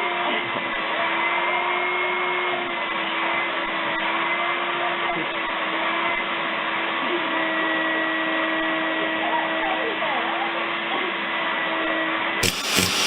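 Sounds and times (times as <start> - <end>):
electric motor whining: 12.4 - 13.0.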